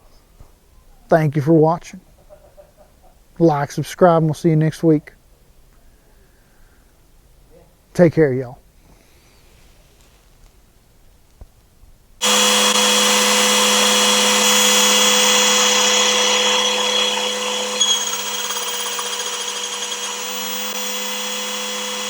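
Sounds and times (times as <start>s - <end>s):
motor whirring: 12.2s - 22.0s.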